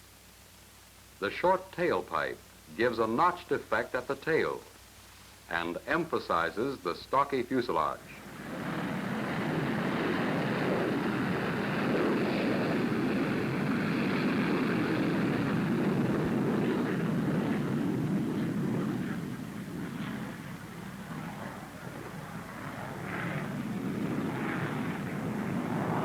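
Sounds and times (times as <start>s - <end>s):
jet aircraft rushing noise: 8.2s - 26.0s.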